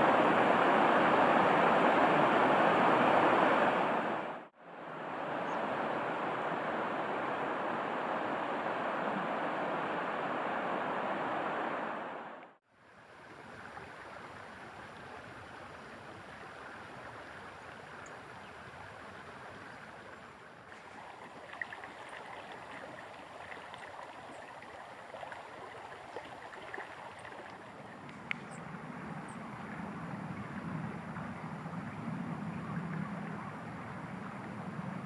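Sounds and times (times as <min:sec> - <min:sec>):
running water rushing: 0:00.0 - 0:35.0.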